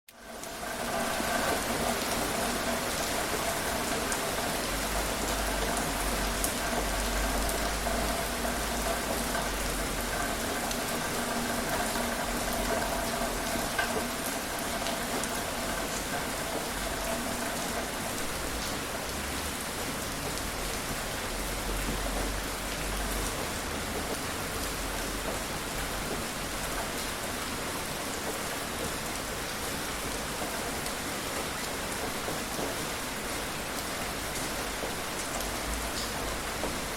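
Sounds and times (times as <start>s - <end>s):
raindrops ticking: 0.1s - 27.1s
steady rain falling: 0.1s - 36.9s.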